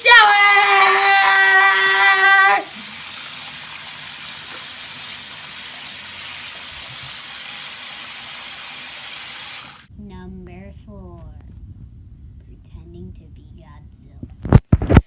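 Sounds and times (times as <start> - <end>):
shower running: 0.0 - 9.9.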